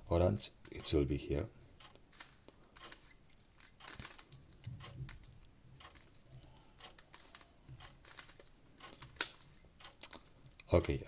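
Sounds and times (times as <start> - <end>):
plastic puzzle cube clicking: 1.8 - 10.2.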